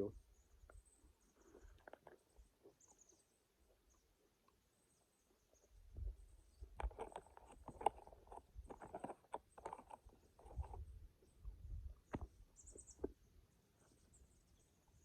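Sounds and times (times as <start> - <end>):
crunchy food chewing: 1.4 - 2.8, 6.6 - 10.9.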